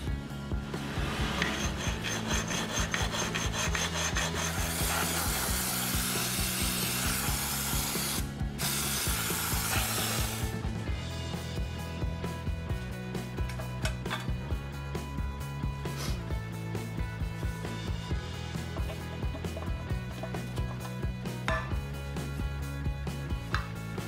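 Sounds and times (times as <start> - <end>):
background music: 0.0 - 24.0
rough rasping rub: 0.7 - 7.0.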